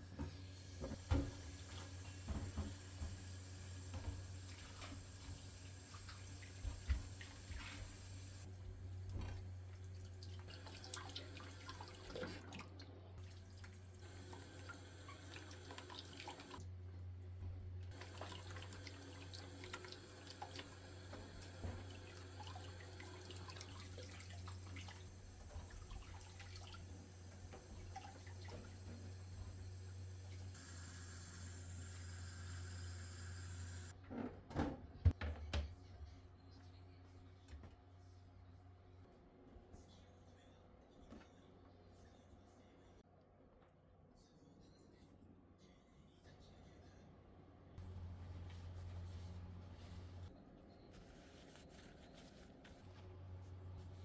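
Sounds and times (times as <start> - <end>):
water splashing in sink: 9.1 - 16.6, 17.9 - 30.6.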